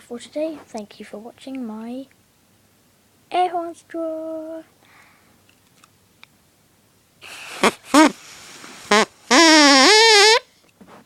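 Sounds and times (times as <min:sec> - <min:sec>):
straw reed horn honking: 0:08.9 - 0:10.4.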